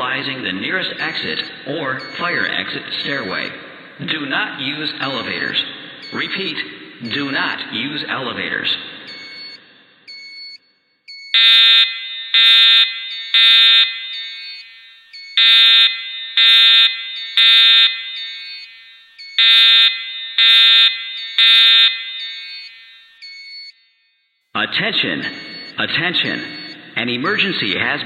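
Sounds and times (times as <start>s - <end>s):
fire alarm horn blasts: 5.1s - 7.3s, 9.1s - 24.1s, 25.2s - 27.0s.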